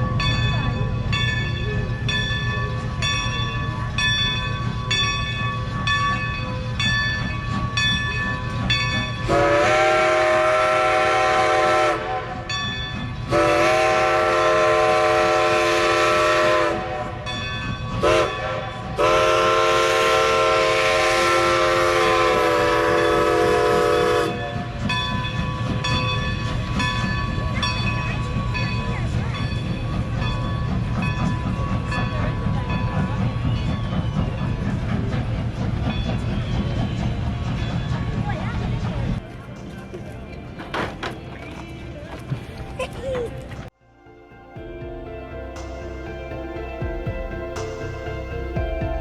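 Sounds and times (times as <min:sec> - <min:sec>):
train rumble: 0:00.0 - 0:49.0
locomotive whistle: 0:09.2 - 0:17.4, 0:18.0 - 0:24.7.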